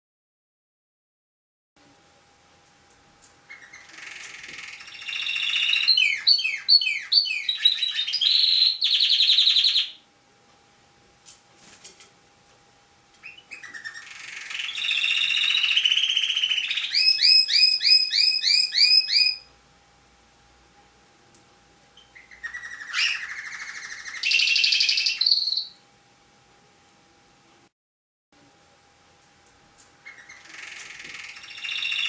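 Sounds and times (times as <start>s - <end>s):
canary singing trills: 3.4s - 10.0s, 13.2s - 19.5s, 22.0s - 25.8s, 30.0s - 32.0s.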